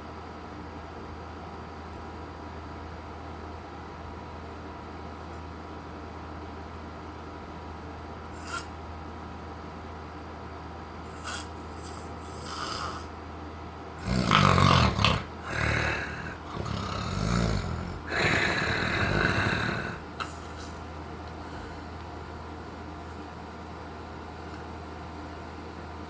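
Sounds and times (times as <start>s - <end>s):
steady low hum: 0.0s - 26.0s
person snoring: 11.2s - 13.1s, 14.0s - 20.8s.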